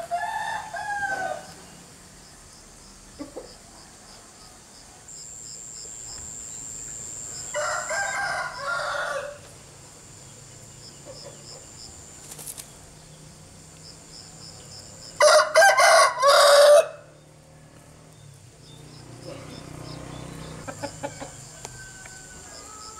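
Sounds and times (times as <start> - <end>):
rooster crowing: 0.0 - 1.5, 7.0 - 9.5, 15.2 - 17.8, 20.6 - 22.9
insects chirping: 0.0 - 22.9.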